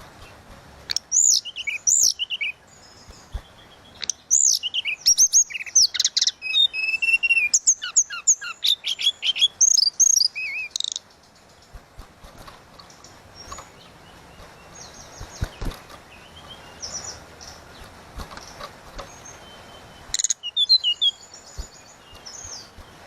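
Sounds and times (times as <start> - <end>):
songbird singing: 0.0 - 23.0
faint scattered sounds: 10.0 - 23.0.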